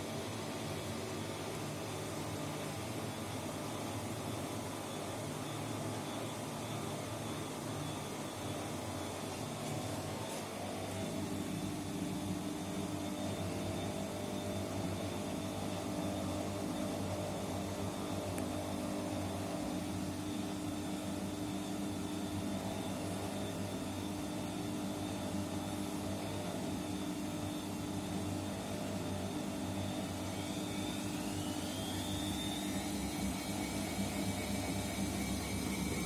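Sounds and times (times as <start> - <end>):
washing machine motor hum: 0.0 - 36.0
high whine rising in pitch: 30.2 - 36.0.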